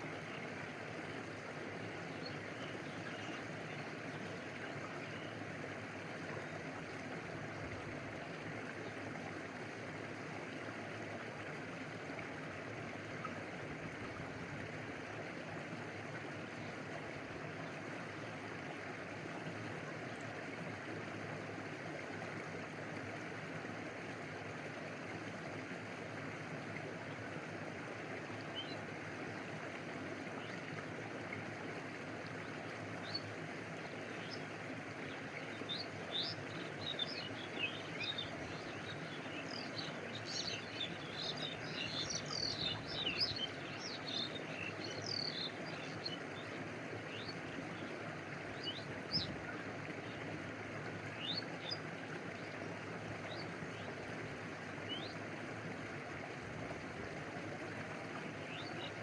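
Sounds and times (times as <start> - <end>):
small waterfall cascading: 0.0 - 59.0
stream water flowing: 0.0 - 59.0
water lapping: 27.9 - 59.0.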